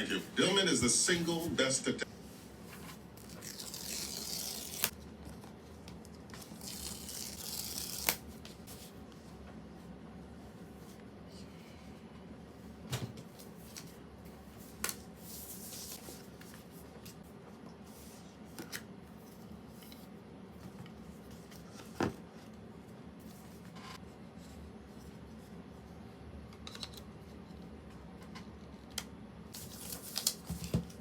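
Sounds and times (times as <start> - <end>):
paper rustle: 29.6 - 31.0.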